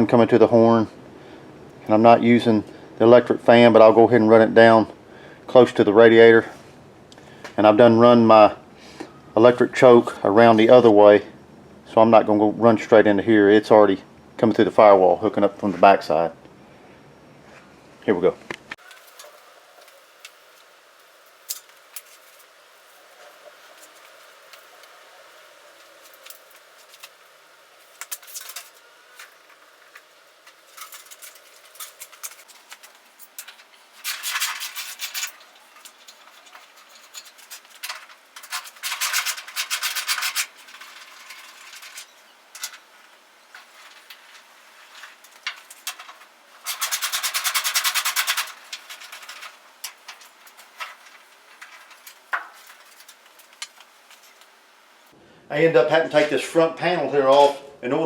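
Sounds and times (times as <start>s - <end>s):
hands rubbing wiring harness: 18.8s - 55.1s.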